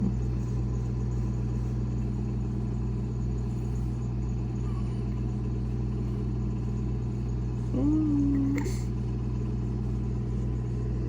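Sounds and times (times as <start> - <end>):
low motor hum: 0.0 - 11.0.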